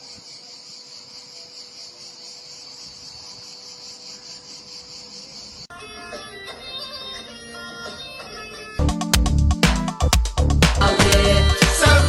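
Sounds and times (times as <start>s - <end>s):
insects chirring: 0.0s - 5.7s.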